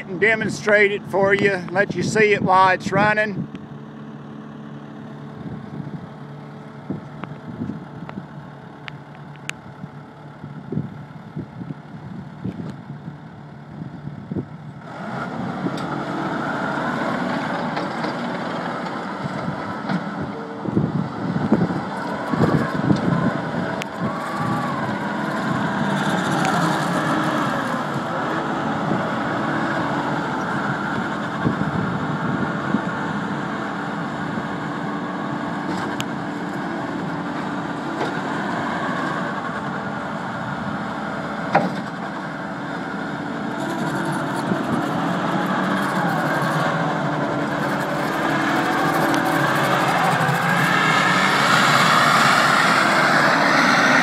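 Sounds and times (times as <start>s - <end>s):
diesel engine running under load: 0.0s - 54.0s
gliding whines: 21.1s - 31.8s, 43.5s - 54.0s.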